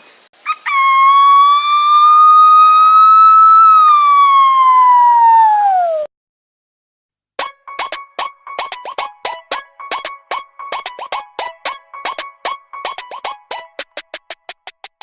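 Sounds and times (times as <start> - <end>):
boy imitating police siren: 4.0 - 6.1.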